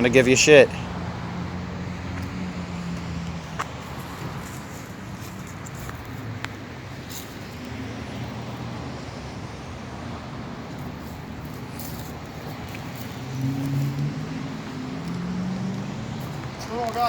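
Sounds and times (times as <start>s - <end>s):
road traffic rumble: 0.0s - 17.0s.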